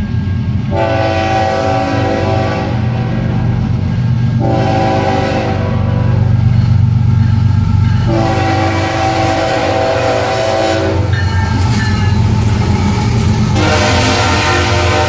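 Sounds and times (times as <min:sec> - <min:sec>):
freight train rumbling: 0:00.0 - 0:15.0
train wheels squealing: 0:11.0 - 0:13.6.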